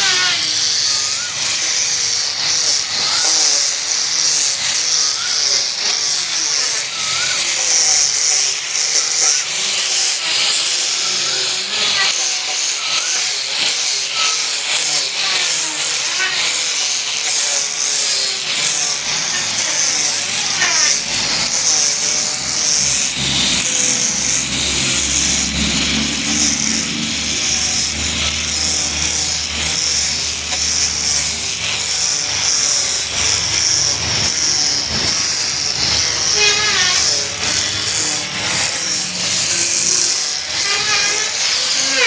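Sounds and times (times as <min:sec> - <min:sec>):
sanding wood: 0:00.0 - 0:42.0.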